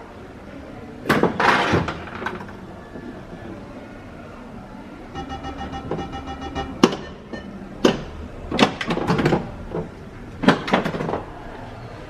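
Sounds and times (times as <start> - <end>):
pinball machine electronic tones: 5.0 - 9.1
pinball machine sharp clacks: 5.2 - 11.2.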